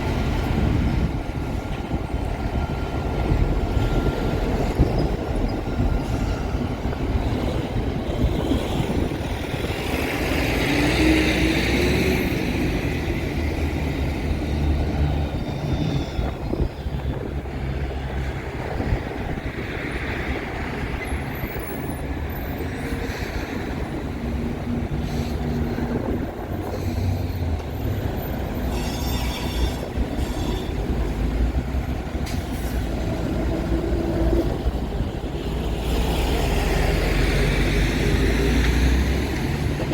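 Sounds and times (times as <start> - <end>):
train wheels rumbling: 0.0 - 39.9
high wheel squeal: 3.3 - 6.7, 14.6 - 17.2, 24.9 - 31.3.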